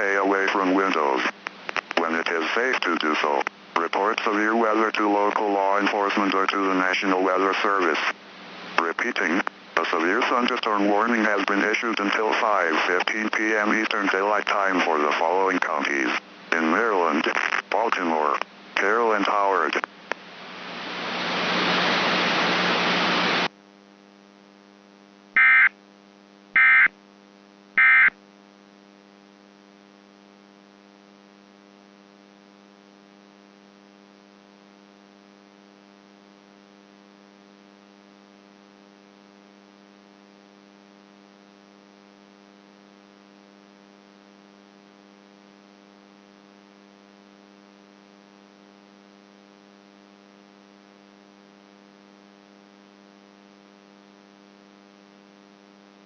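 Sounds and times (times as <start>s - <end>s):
loud static: 0.0s - 56.0s
steady electrical hum: 0.0s - 56.0s
data tone bursts: 25.4s - 25.7s, 26.6s - 26.9s, 27.8s - 28.2s.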